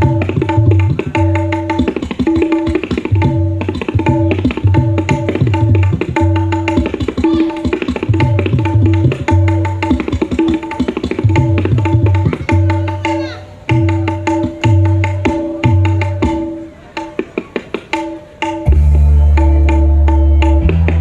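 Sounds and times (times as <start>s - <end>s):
hand drums in fast rhythm: 0.0s - 21.0s
booming bass-drum notes: 18.6s - 21.0s.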